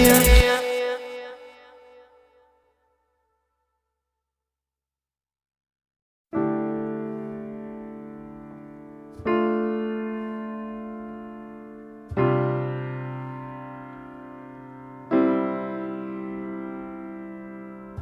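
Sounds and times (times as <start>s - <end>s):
slow piano chords: 6.3s - 18.0s.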